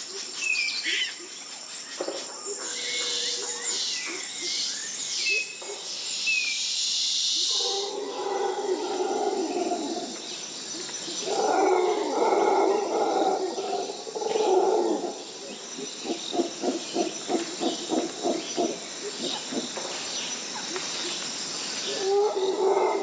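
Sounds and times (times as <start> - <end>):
high insect drone: 0.0 - 23.0
howler monkeys roaring and grunting: 7.5 - 10.2, 10.8 - 20.0, 21.8 - 23.0.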